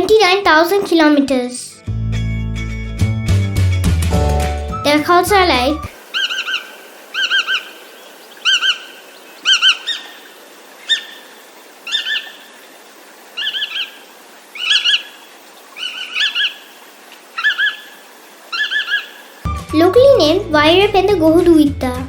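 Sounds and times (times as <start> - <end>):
godwit calling: 6.0 - 12.6, 13.4 - 16.7, 17.3 - 19.3.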